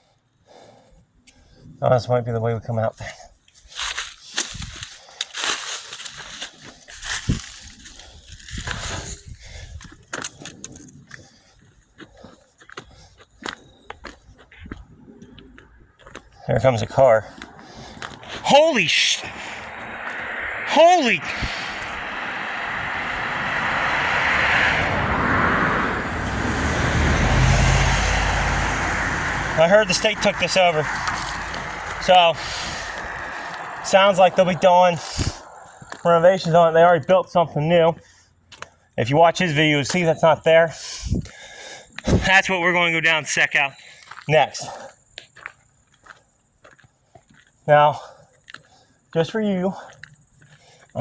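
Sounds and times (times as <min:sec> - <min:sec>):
footsteps crunching: 0:03.3 - 0:09.2, 0:09.8 - 0:20.2, 0:29.3 - 0:34.6, 0:35.3 - 0:36.6, 0:43.8 - 0:51.0
wind rumble: 0:06.0 - 0:11.5, 0:14.2 - 0:37.0
car passing on road: 0:14.8 - 0:37.4.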